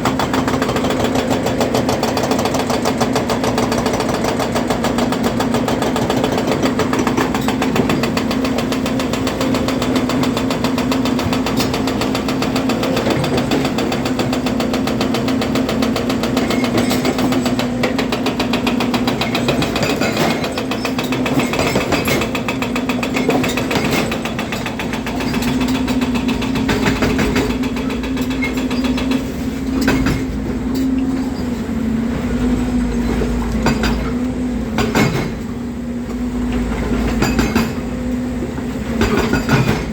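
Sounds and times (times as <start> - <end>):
excavator engine drone: 0.0 - 39.9.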